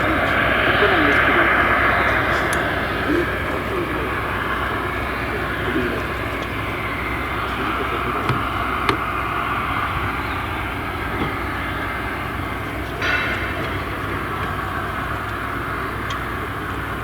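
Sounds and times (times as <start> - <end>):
large vehicle roaring: 0.0 - 17.0.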